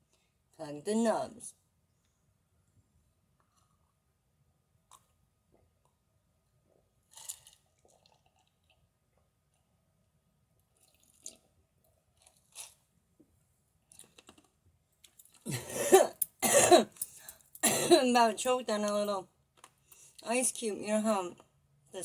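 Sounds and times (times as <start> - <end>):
person gulping water: 7.1 - 8.6, 15.5 - 18.0
person coughing: 15.5 - 17.0, 17.6 - 18.2.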